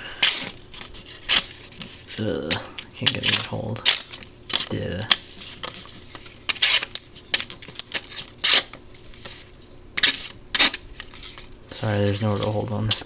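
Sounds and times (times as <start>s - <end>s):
hard objects clicking and rattling: 6.9s - 8.1s.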